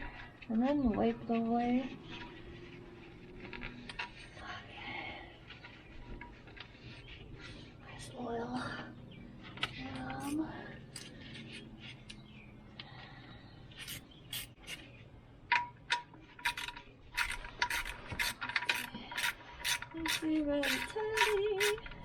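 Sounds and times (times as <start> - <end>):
ratchet wrench clicking: 13.8 - 14.8, 16.4 - 21.9.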